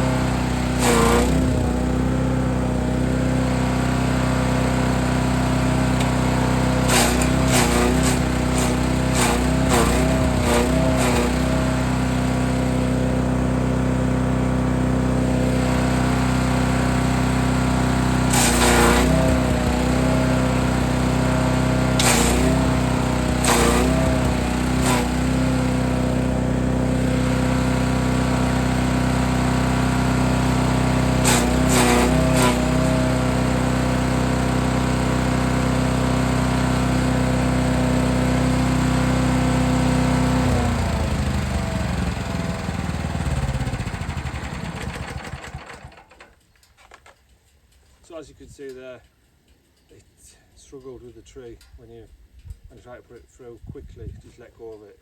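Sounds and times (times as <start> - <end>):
branches crunching in chipper: 0.0 - 2.4, 5.1 - 34.4
wood chipper engine running: 0.0 - 46.4.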